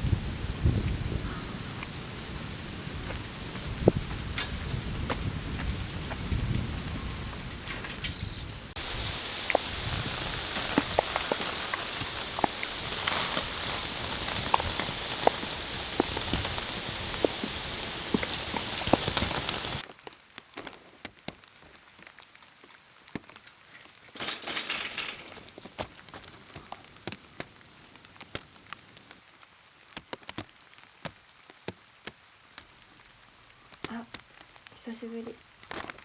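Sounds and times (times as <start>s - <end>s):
heavy rain: 0.0s - 19.9s.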